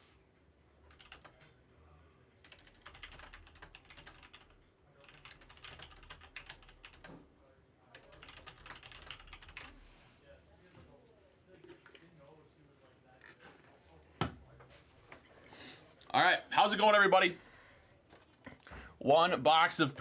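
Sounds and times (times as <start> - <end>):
typing on computer keyboard: 0.8 - 1.6, 2.4 - 7.2, 7.9 - 9.8, 18.1 - 18.7.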